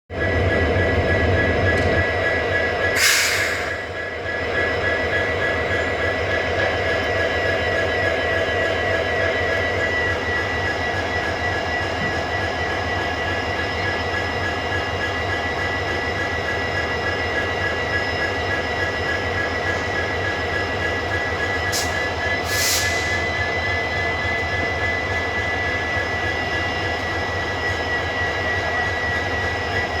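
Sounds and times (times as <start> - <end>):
locomotive engine hum: 0.1 - 30.0
air hiss: 3.0 - 3.7, 22.5 - 23.1.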